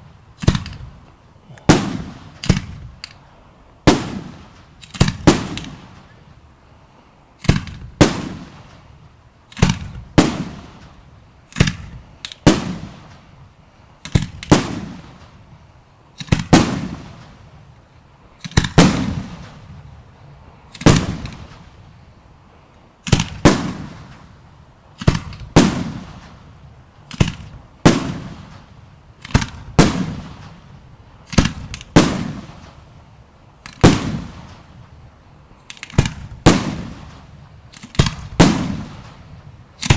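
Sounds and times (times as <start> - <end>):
firework shells exploding: 0.4 - 1.0, 1.7 - 3.1, 3.9 - 6.1, 9.5 - 13.3, 16.2 - 17.4, 18.4 - 19.8, 20.7 - 21.8, 23.1 - 33.0, 33.6 - 35.1, 35.7 - 39.9.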